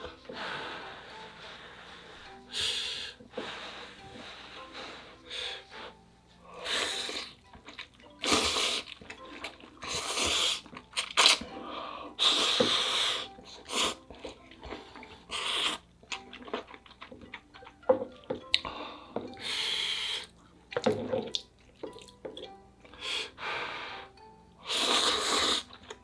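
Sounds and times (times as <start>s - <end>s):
person slurping noodles: 8.2s - 9.0s, 9.8s - 11.4s, 15.3s - 15.8s, 24.7s - 25.8s.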